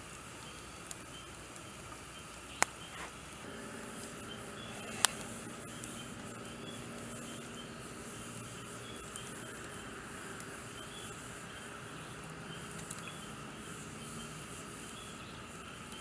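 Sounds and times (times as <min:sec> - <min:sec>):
outdoor background: 0:00.0 - 0:16.0
fire crackling: 0:00.1 - 0:16.0
faint repeating chirp: 0:03.4 - 0:16.0.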